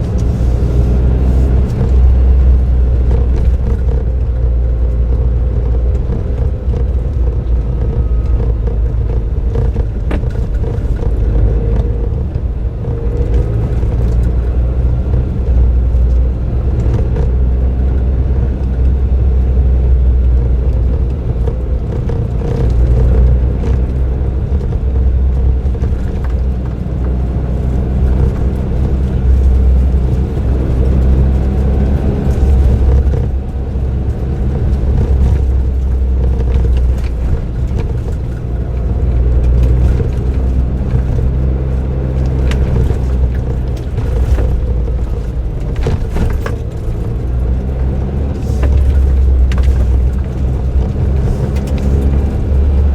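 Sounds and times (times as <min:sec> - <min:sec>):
car engine droning: 0:00.0 - 0:52.9
road rumble: 0:00.0 - 0:52.9.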